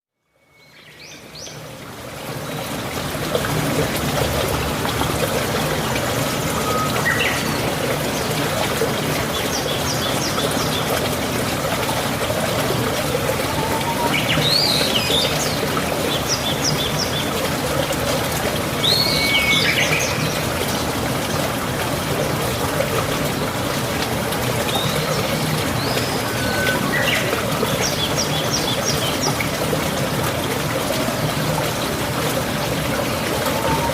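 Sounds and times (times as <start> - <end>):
stream water flowing: 0.3 - 33.9
birds chirping and calling: 13.4 - 17.2, 24.7 - 29.4.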